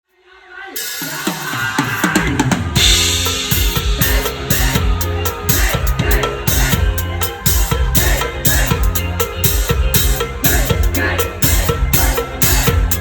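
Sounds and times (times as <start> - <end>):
cymbal crash: 0.8 - 6.8
band playing: 0.8 - 13.0
drum fill: 0.9 - 13.0.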